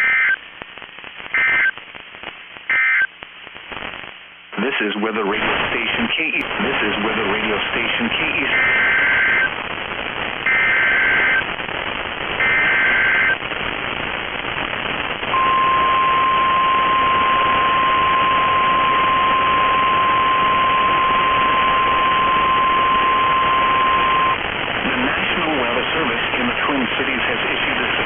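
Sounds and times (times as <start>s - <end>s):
radio static hiss: 0.0s - 28.0s
steady alarm tone: 8.5s - 9.5s, 10.5s - 11.4s, 12.4s - 13.4s, 15.3s - 24.4s.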